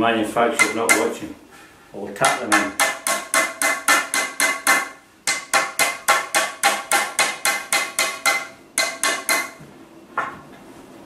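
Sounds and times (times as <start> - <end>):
hammer tapping wooden dowels: 0.5 - 1.3, 2.1 - 10.3.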